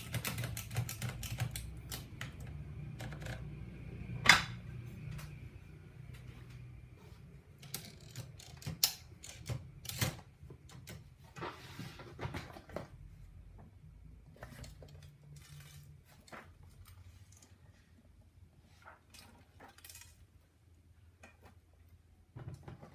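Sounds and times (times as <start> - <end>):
typewriter mechanism clicking: 0.0 - 3.5, 7.6 - 11.0
rustling scrapes: 11.2 - 12.5.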